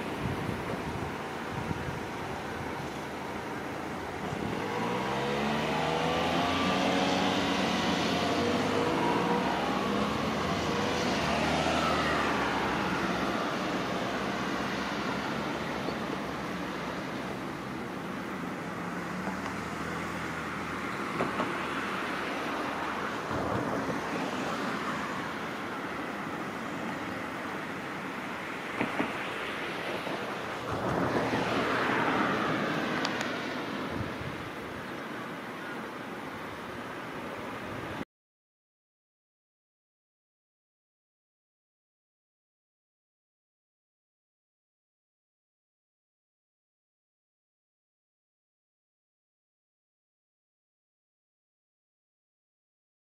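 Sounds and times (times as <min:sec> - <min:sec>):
river rushing: 0:00.0 - 0:38.0
vehicle driving past: 0:04.4 - 0:17.7, 0:28.4 - 0:34.0.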